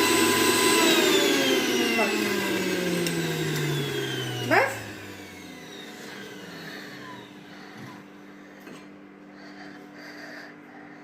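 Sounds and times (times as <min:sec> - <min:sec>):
mixer grinder motor whining: 0:00.0 - 0:08.7.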